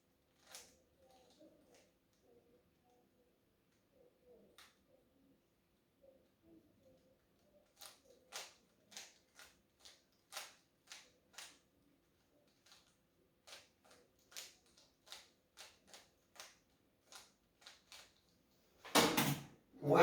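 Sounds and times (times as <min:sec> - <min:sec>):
puzzle cube plastic clicks: 0:00.3 - 0:01.8, 0:07.6 - 0:18.3.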